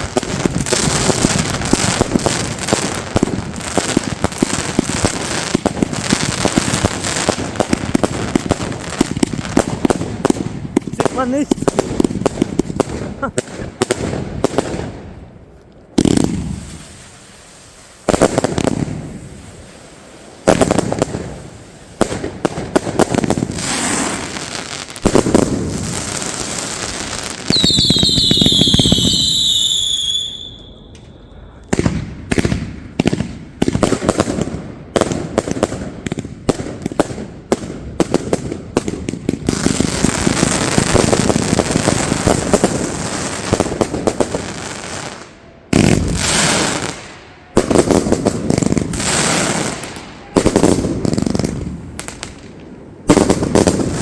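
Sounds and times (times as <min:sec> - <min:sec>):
fireworks banging: 0:00.0 - 0:54.0
rapid crackling fireworks: 0:00.0 - 0:54.0
firework whistling: 0:16.0 - 0:22.0, 0:22.9 - 0:32.9, 0:44.4 - 0:52.2.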